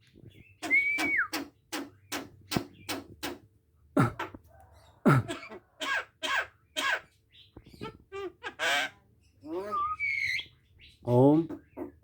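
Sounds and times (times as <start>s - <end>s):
bird giving harsh calls: 5.2s - 7.2s.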